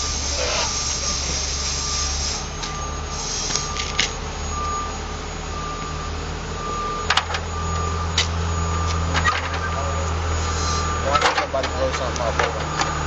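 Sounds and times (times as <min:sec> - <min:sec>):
low engine rumble: 0:00.0 - 0:13.0
vehicle reversing beeper: 0:00.0 - 0:13.0.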